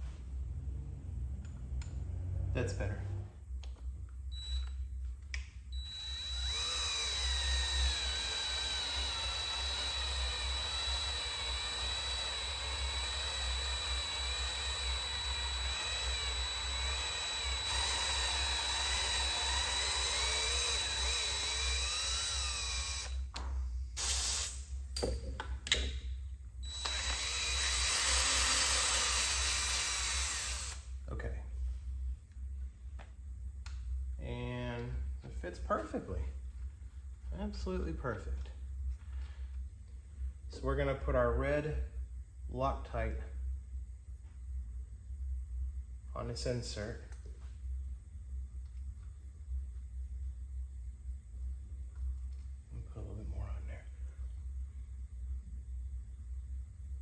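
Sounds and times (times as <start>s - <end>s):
power drill running: 5.8s - 23.3s, 26.6s - 30.9s.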